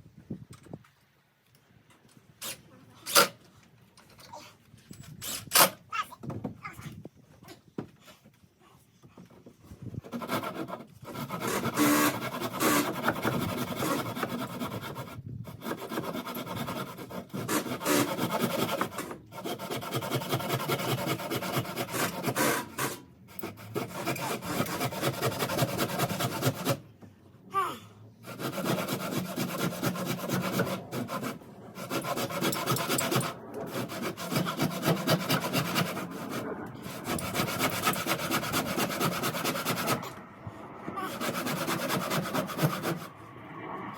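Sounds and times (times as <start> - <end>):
hand saw cutting timber: 2.4 - 3.4, 5.0 - 6.1, 10.0 - 27.0, 28.2 - 40.2, 41.0 - 43.2.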